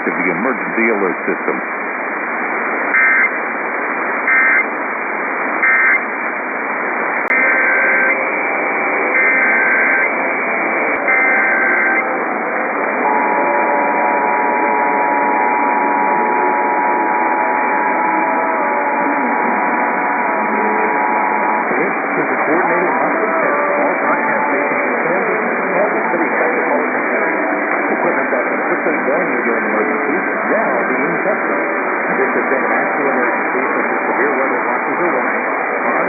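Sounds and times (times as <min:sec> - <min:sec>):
radio static hiss: 0:00.0 - 0:36.0
digital data squawks: 0:02.9 - 0:03.4, 0:10.9 - 0:12.0
two-tone attention signal: 0:03.0 - 0:03.4, 0:04.3 - 0:04.7, 0:05.6 - 0:06.0, 0:07.3 - 0:08.4, 0:09.1 - 0:10.2, 0:10.9 - 0:12.1.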